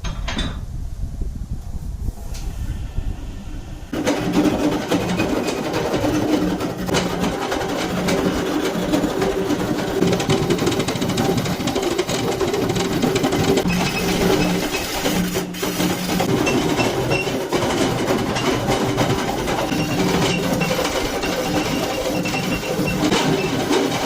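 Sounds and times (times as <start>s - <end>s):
low rumble: 0.6s - 4.0s
machine motor rattling: 3.9s - 24.0s.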